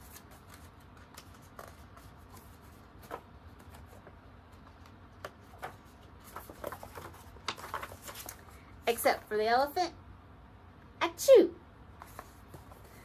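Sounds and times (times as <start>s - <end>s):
paper pages rustling: 0.0s - 8.6s, 12.0s - 13.0s
low steady hum: 0.0s - 13.0s.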